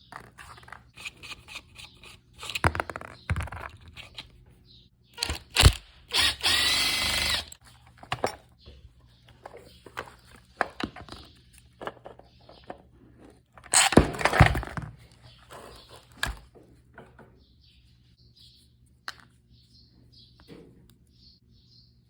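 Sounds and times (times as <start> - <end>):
tools and parts clattering: 7.3 - 17.3.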